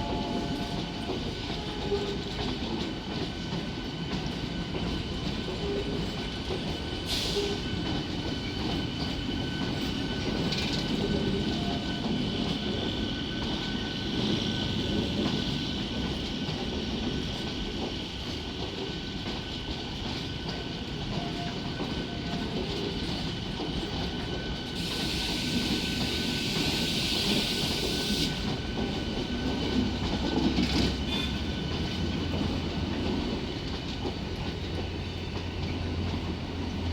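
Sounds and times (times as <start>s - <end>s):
train rumble and clickety-clack: 0.0s - 36.9s
hiss: 7.0s - 7.7s, 24.6s - 28.6s.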